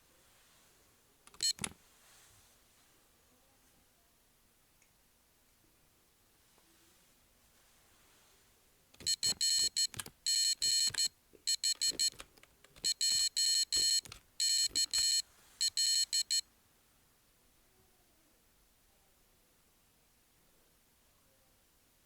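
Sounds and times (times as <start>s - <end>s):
buzzer beeping morse code: 9.0s - 12.2s, 12.8s - 16.4s.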